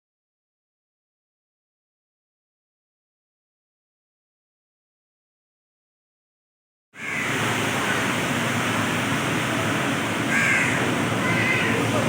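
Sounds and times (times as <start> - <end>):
heavy rain rushing: 7.0 - 12.0.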